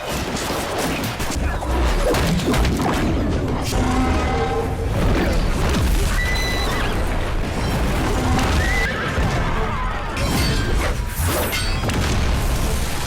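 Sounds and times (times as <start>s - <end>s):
film soundtrack music: 0.4s - 13.0s
horses whinnying: 8.2s - 10.2s.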